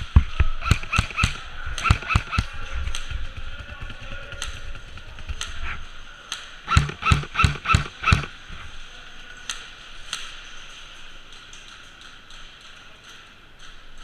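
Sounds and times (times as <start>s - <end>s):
airsoft gun shots: 0.0s - 5.8s, 6.7s - 8.6s.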